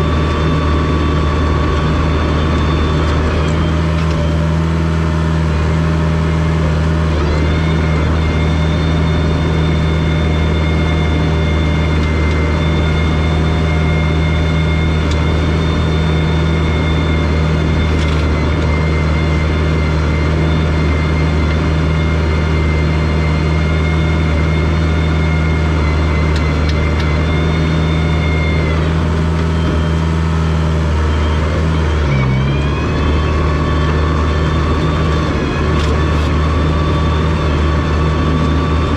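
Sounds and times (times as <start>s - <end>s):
bulldozer diesel engine running: 0.0s - 38.9s
high whine: 0.0s - 38.9s.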